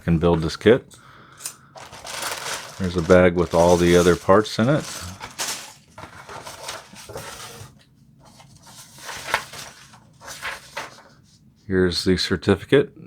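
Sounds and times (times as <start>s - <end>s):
plastic bag crinkling: 1.7s - 7.7s, 8.4s - 11.1s.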